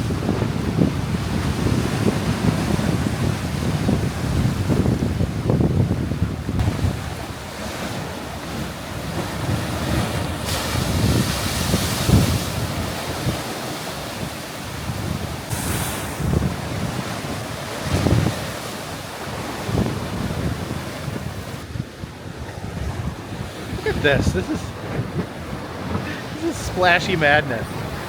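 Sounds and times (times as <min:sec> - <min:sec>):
ocean waves churning in rocks: 0:00.0 - 0:28.0
wind buffeting microphone: 0:00.0 - 0:28.0
water splashing hiss: 0:14.4 - 0:19.3.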